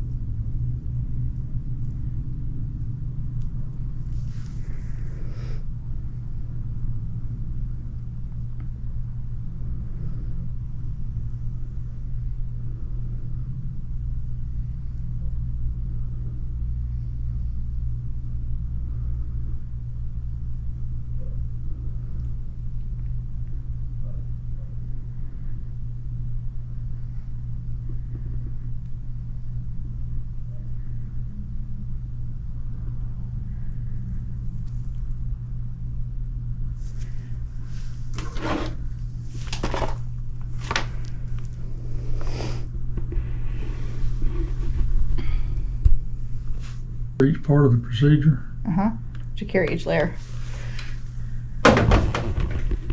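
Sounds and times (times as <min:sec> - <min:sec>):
low machine hum: 0:00.0 - 0:52.9.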